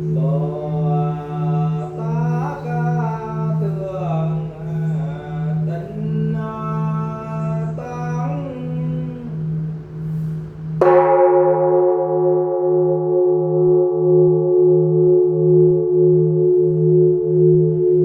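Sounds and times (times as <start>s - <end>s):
held chanted note: 0.0s - 18.0s
temple bell humming: 0.0s - 18.0s.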